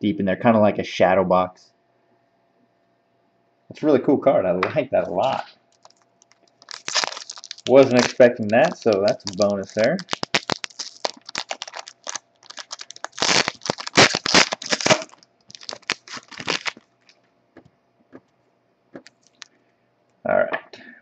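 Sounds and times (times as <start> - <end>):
cards and packaging crinkling: 5.1 - 17.2, 19.0 - 19.5.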